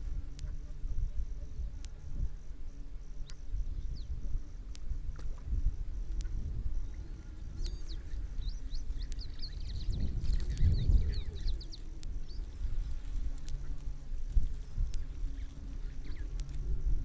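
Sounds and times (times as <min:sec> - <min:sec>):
insect trilling in pulses: 0:00.0 - 0:17.0
low rumble: 0:00.0 - 0:17.0
small birds chirping: 0:00.0 - 0:17.0
faint click: 0:04.7 - 0:06.4, 0:07.6 - 0:16.7.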